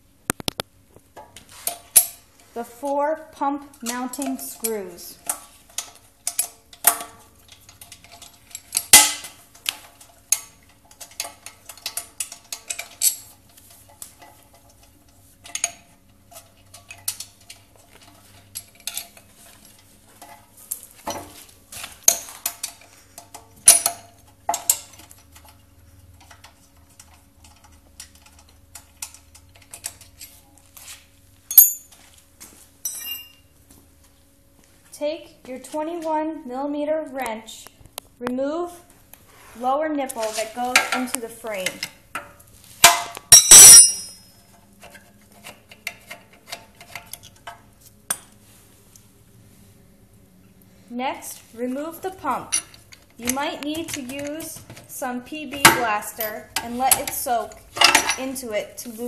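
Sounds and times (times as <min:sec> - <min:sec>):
high ringing clink: 0:31.5 - 0:32.0, 0:32.8 - 0:33.4, 0:43.3 - 0:44.4.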